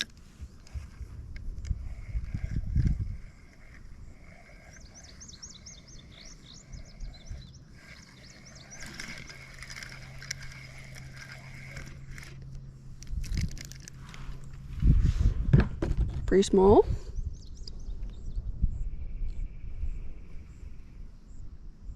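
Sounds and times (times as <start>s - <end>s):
songbird chirping: 1.9s - 12.8s, 16.3s - 21.5s.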